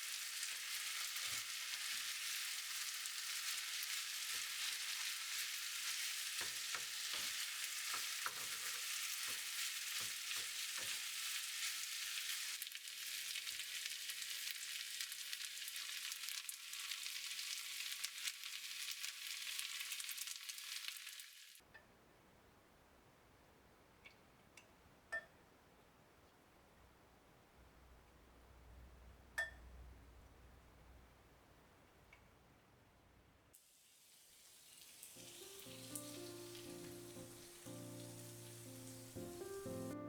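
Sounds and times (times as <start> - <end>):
rice sizzling in a frying pan: 0.0 - 21.6, 33.6 - 40.0
utensil scraping a pan: 4.3 - 12.4.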